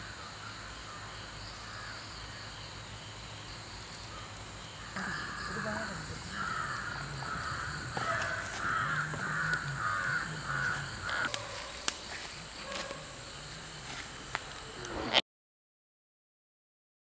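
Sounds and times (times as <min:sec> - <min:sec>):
crows cawing: 0:01.6 - 0:02.4, 0:04.1 - 0:11.6.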